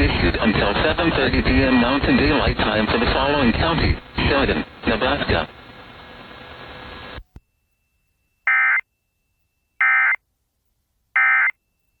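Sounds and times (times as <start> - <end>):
radio hiss: 0.0 - 7.2.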